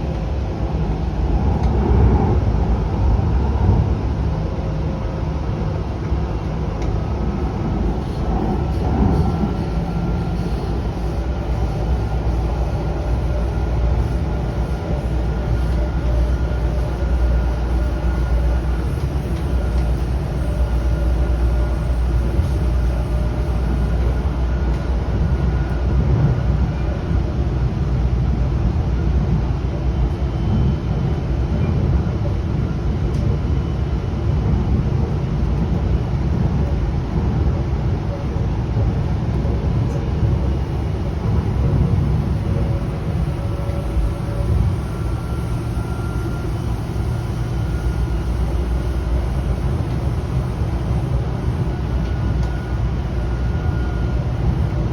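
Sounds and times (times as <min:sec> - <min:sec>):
train rumbling: 0:00.0 - 0:54.9
faint whine: 0:39.9 - 0:54.9.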